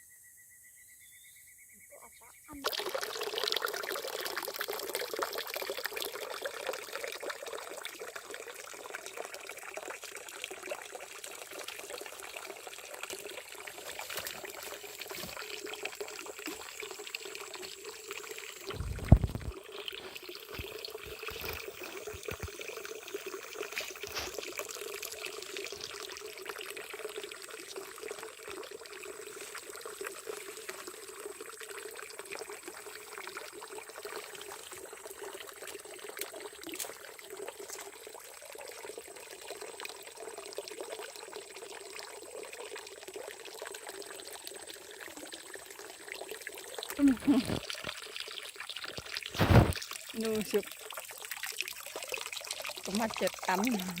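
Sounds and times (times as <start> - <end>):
water pouring: 2.5 - 54.0.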